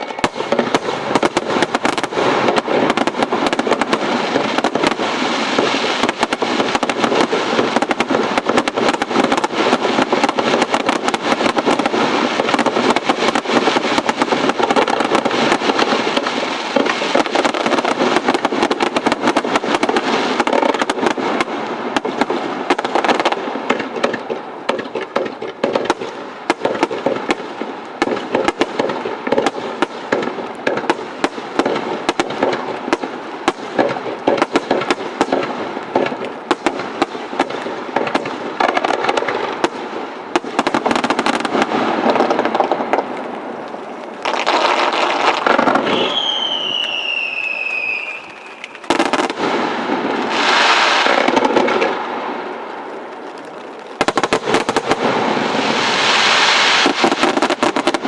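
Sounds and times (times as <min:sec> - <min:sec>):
falling firework whistle: 0:00.0 - 0:05.0, 0:40.3 - 0:58.0
fireworks crackling and popping: 0:00.0 - 0:58.0
fireworks sharp bangs: 0:00.0 - 0:58.0.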